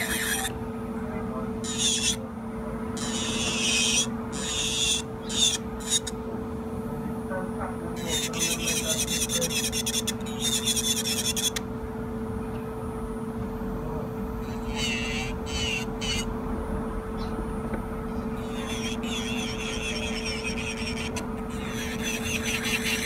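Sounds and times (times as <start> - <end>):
drill bit grinding a nail: 0.0 - 0.6, 1.6 - 2.2, 3.0 - 6.2, 8.0 - 11.6, 14.4 - 16.3, 18.4 - 23.0
electric nail drill humming: 0.0 - 0.6, 1.6 - 2.2, 3.0 - 6.2, 8.0 - 11.7, 14.4 - 16.4, 18.2 - 23.0.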